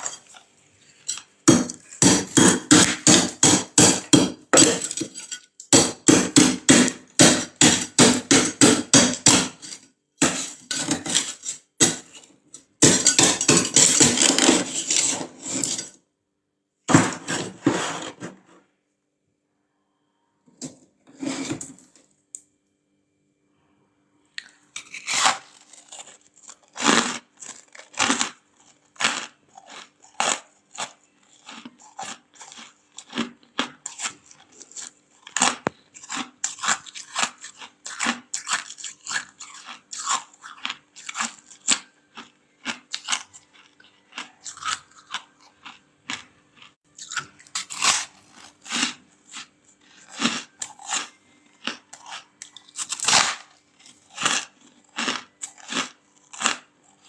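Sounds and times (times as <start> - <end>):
frost being chewed crunching: 0.0 - 9.8, 24.4 - 57.0.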